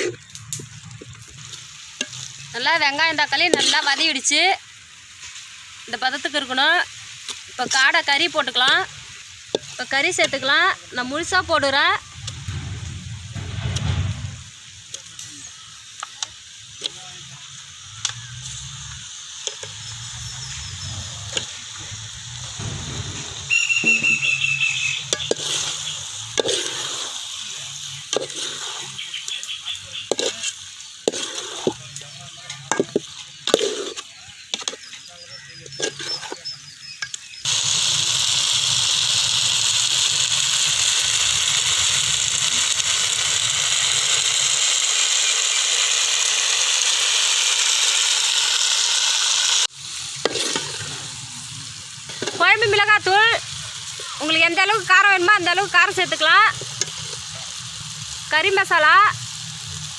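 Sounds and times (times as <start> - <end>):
meat sizzling in a pan: 0.0 - 59.9
spoon scraping a pan: 3.5 - 4.1, 23.5 - 27.1, 27.9 - 31.8, 32.5 - 35.0, 35.6 - 37.2, 50.3 - 51.1.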